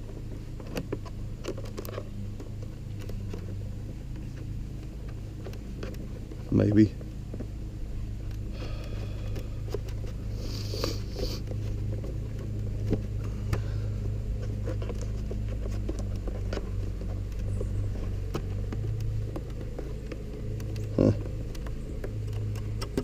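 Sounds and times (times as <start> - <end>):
hands rustling: 0.0 - 23.0
steady low hum: 0.0 - 23.0
light clicks of small parts: 8.1 - 23.0.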